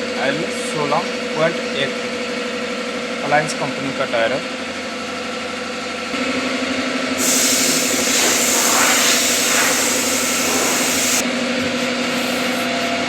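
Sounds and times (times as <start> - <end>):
steady engine hum: 4.4 - 13.0
compressed air hiss: 7.2 - 11.2.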